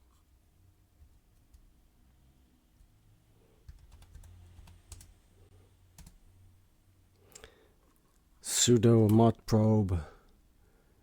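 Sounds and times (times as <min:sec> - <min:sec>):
keyboard typing: 0:03.6 - 0:05.1, 0:06.0 - 0:06.2.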